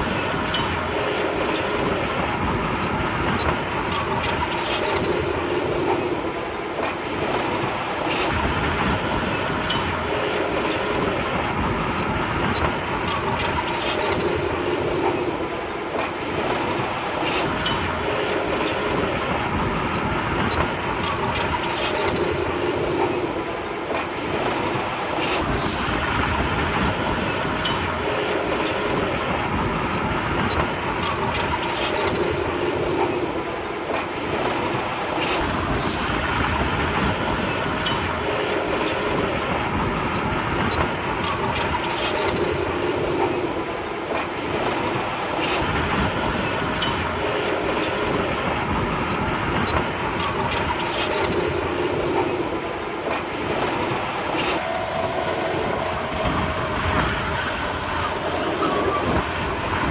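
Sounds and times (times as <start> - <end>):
steel tracks clanking: 0.0 - 59.9
diesel engine running: 53.9 - 59.9.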